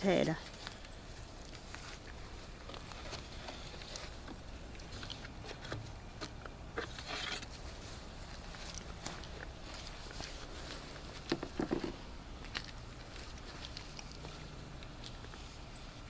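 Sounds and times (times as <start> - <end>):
small clicks and scrapes: 0.6 - 7.6.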